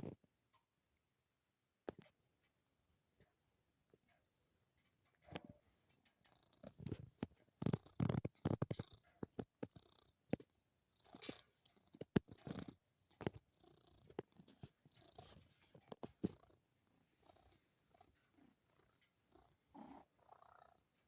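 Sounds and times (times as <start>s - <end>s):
cat purring: 5.2s - 21.0s.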